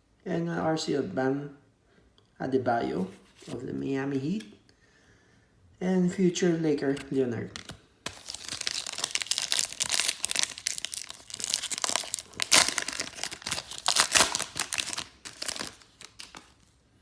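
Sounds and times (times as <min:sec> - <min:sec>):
wrapper crinkling and crackling: 0:07.4 - 0:16.8.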